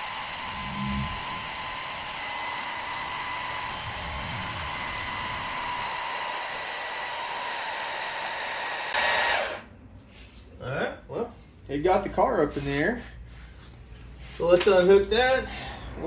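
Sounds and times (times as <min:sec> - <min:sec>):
electric hydraulic jack motor whining: 0:00.0 - 0:09.7.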